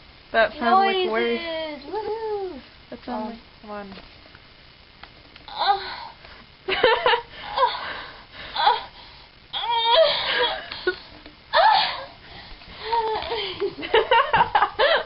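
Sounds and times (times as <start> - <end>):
woman warbling cry: 5.5 - 6.1, 11.5 - 12.1
woman moaning and squealing: 5.5 - 6.2, 7.4 - 12.2, 12.8 - 13.4
woman giggling: 6.7 - 7.8, 12.9 - 15.0.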